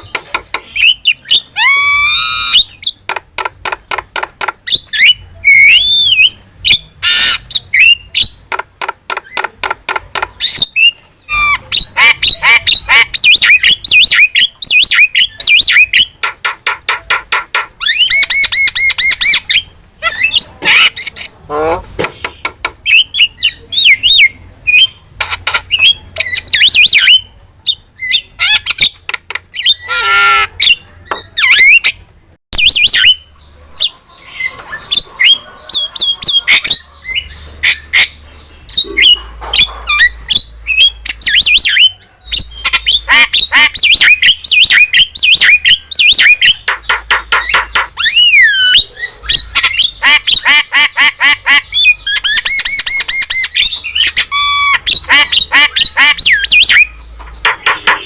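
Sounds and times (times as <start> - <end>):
starling whistles and chirps: 0.0 - 3.0, 4.7 - 8.4, 32.6 - 58.0.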